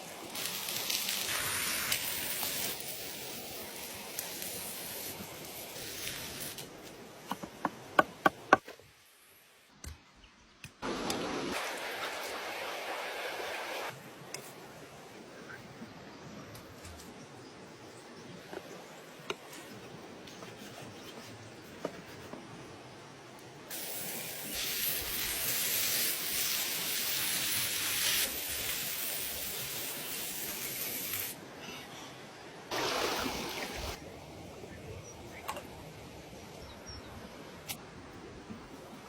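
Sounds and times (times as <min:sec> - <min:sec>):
meat sizzling in a hot pan: 0:00.0 - 0:06.5, 0:23.7 - 0:31.4.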